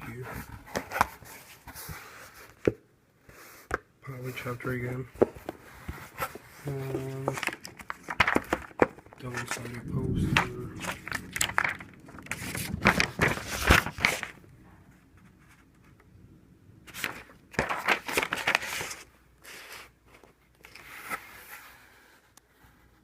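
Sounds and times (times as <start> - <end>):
paper rustling and crinkling: 5.2 - 9.6, 10.8 - 14.4, 16.9 - 23.0.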